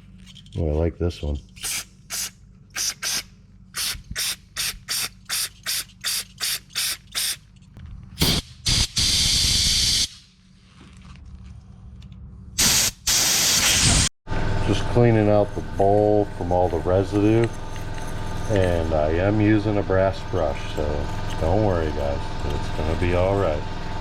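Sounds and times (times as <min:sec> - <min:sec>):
compressed air blow gun puffs: 0:03.8 - 0:07.4.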